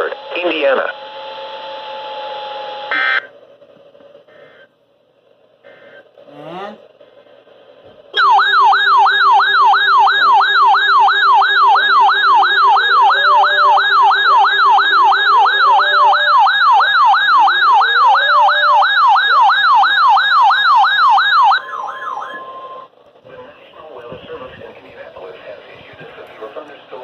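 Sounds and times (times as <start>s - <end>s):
electronic warbling alert siren: 8.2s - 22.9s.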